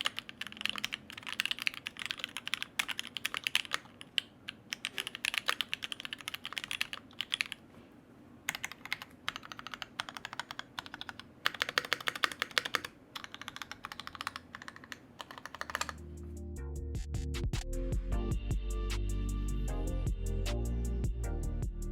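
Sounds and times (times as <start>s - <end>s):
mechanical keyboard typing: 0.0s - 7.6s, 8.5s - 16.0s
music: 16.0s - 21.9s.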